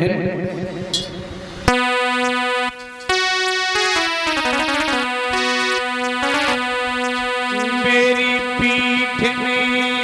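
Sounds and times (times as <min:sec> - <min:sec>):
keyboard playing sustained notes: 0:00.7 - 0:10.0.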